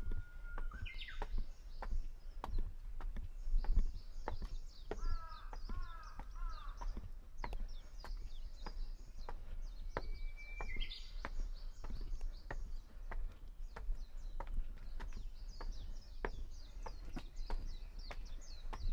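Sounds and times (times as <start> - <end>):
bird whistling song: 0.0 - 1.5, 9.9 - 12.0
small birds chirping: 0.0 - 18.9
crow cawing: 5.0 - 6.8.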